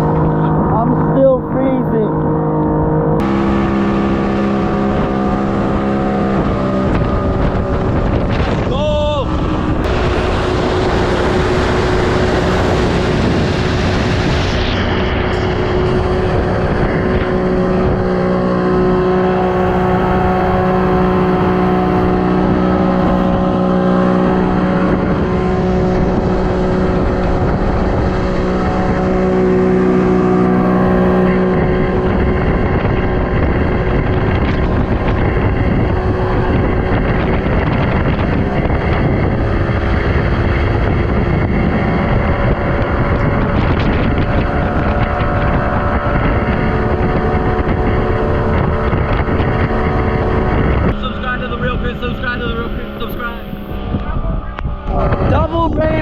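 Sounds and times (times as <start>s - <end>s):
motorboat engine running: 0.0s - 56.0s.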